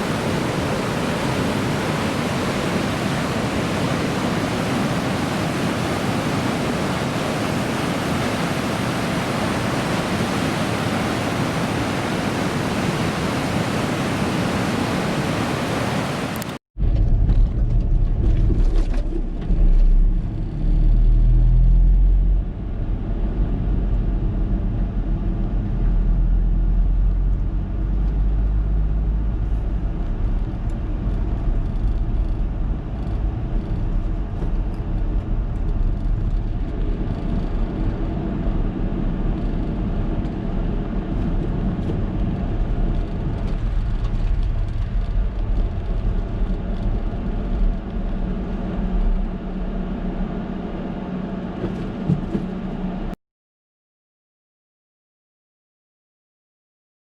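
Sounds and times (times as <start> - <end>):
heavy surf breaking: 0.0 - 16.6
low rumble: 16.8 - 51.6.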